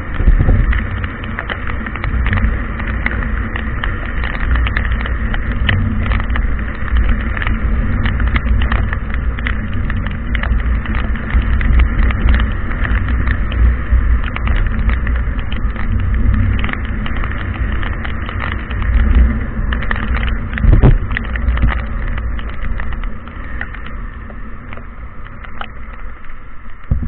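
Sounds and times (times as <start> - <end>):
heavy rain: 0.0 - 27.0
low rumble of wind: 0.0 - 27.0
raindrops ticking close by: 0.0 - 27.0.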